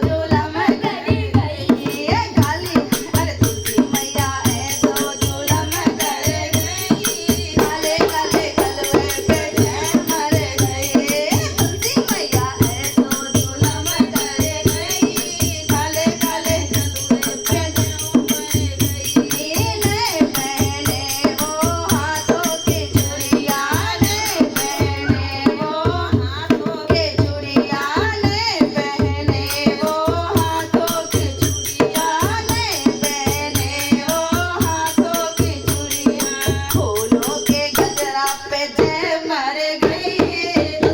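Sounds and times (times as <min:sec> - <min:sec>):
hand drum beat: 0:00.0 - 0:39.1
devotional singing voices: 0:00.0 - 0:40.9
jingling rattle percussion: 0:00.0 - 0:40.9.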